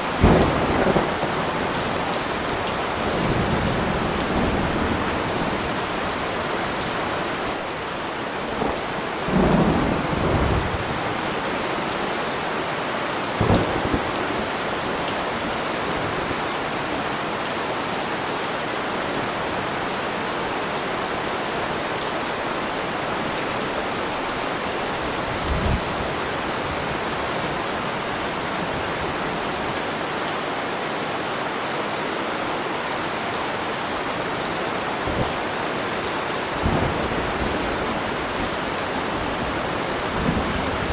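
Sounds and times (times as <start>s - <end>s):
heavy rain falling: 0.0s - 40.9s
low thunder rumbles: 0.1s - 6.2s, 8.6s - 11.1s, 13.4s - 14.6s.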